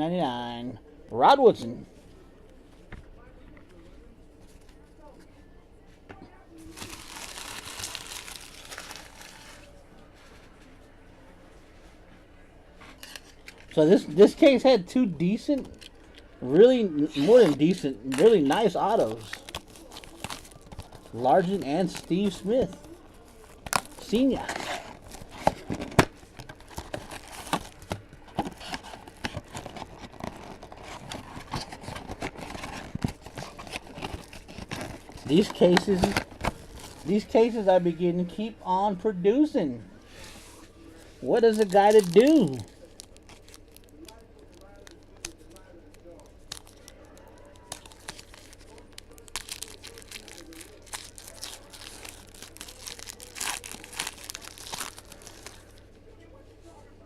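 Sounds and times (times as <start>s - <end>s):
foil wrappers crinkling: 6.7s - 9.7s, 17.0s - 37.7s, 40.6s - 55.9s
wrapper ripping: 6.7s - 9.7s, 17.1s - 37.4s, 41.3s - 55.8s.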